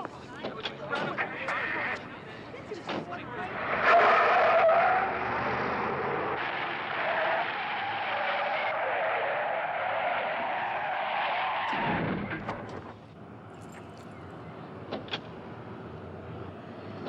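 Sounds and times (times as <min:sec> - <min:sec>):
car tyres screeching: 0:00.1 - 0:13.1.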